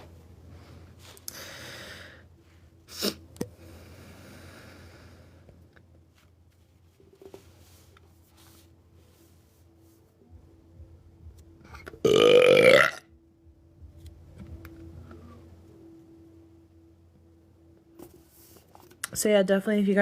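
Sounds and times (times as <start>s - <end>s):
person breathing: 0.4s - 2.8s, 3.5s - 5.6s.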